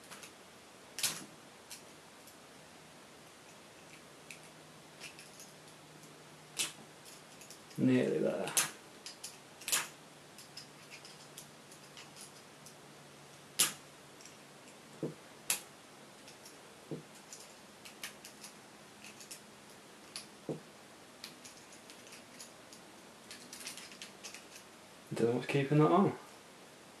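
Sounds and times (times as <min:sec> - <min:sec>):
hand tools clicking on lock: 0:08.5 - 0:12.4, 0:17.2 - 0:19.4, 0:21.2 - 0:24.6.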